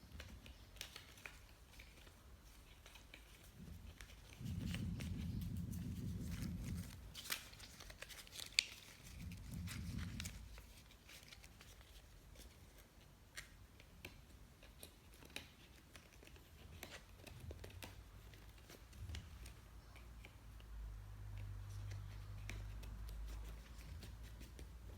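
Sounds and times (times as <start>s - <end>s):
packaging rustling: 0.1s - 13.6s
low rumbling handling noise: 3.6s - 7.4s, 9.1s - 10.7s.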